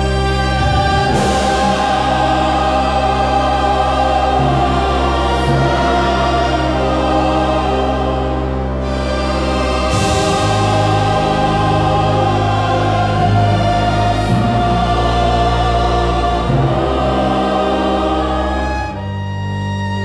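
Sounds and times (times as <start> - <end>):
held low bass notes: 0.0 - 20.0
slow orchestral music: 0.0 - 20.0
sustained choir: 0.0 - 20.0.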